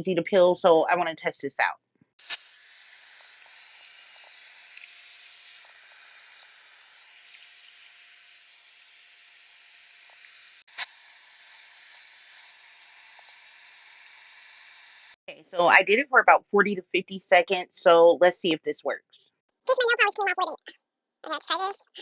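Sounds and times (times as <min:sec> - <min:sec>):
hair dryer blowing: 0:02.2 - 0:15.2.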